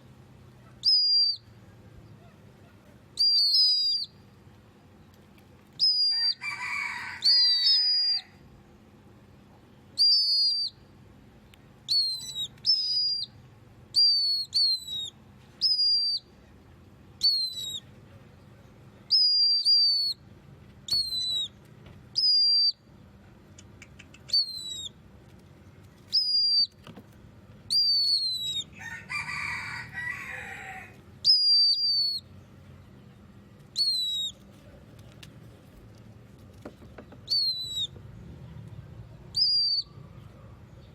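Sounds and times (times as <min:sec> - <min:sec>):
pet bird whistling calls: 0:00.8 - 0:01.5, 0:03.2 - 0:04.2, 0:05.8 - 0:06.4, 0:07.3 - 0:08.2, 0:10.0 - 0:10.8, 0:11.9 - 0:16.3, 0:17.2 - 0:17.9, 0:19.1 - 0:20.2, 0:20.9 - 0:21.6, 0:22.2 - 0:22.8, 0:23.6 - 0:25.0, 0:26.1 - 0:26.8, 0:27.7 - 0:28.8, 0:31.2 - 0:32.3, 0:33.7 - 0:34.4, 0:37.2 - 0:38.0, 0:39.3 - 0:40.1.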